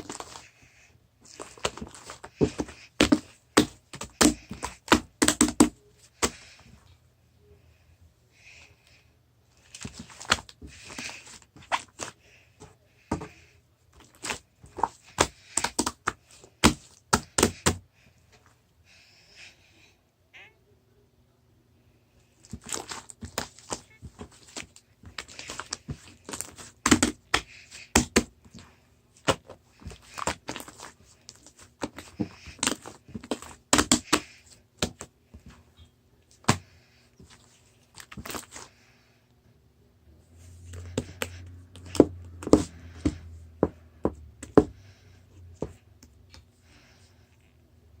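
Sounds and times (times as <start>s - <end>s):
rustling and crinkling: 0.0s - 6.9s, 9.5s - 18.6s, 22.2s - 39.0s.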